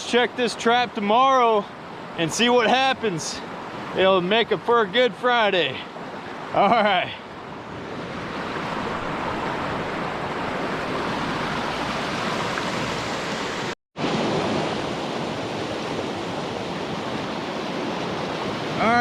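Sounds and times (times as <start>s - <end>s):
small waves lapping on shore: 0.1s - 19.0s.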